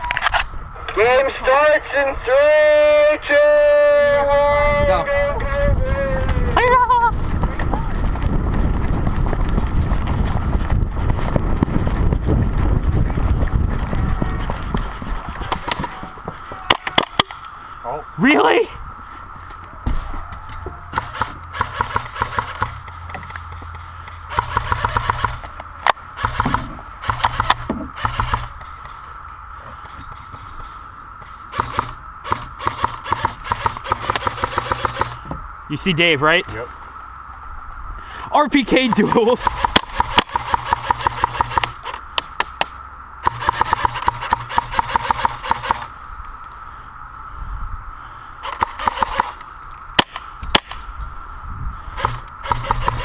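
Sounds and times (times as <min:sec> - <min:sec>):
sharp crack: 0:16.6 - 0:17.6, 0:20.9 - 0:29.0, 0:48.4 - 0:50.9
airsoft gun bursts: 0:20.9 - 0:22.8, 0:24.3 - 0:25.5, 0:26.2 - 0:29.0, 0:31.5 - 0:35.2, 0:38.8 - 0:42.0, 0:43.2 - 0:45.9, 0:48.4 - 0:49.4, 0:52.0 - 0:53.0.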